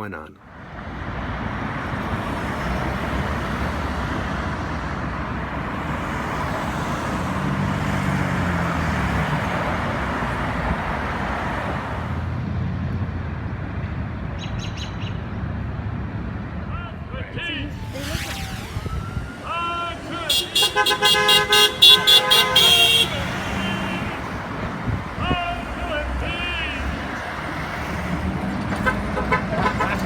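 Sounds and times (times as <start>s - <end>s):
cars passing: 0.0s - 30.0s
birds chirping: 12.8s - 18.7s, 19.3s - 30.0s
heavy engine droning: 15.1s - 30.0s.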